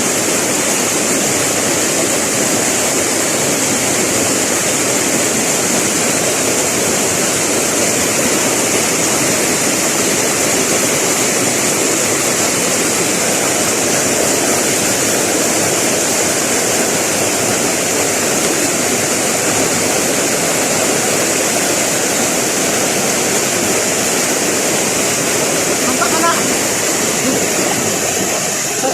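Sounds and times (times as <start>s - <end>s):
river water rushing: 0.0s - 28.9s.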